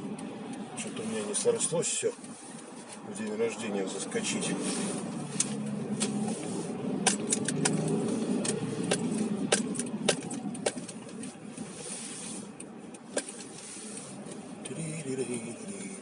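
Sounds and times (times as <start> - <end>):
engine and road hum: 0.0 - 16.0
sharp clicks and ticks: 7.0 - 11.4.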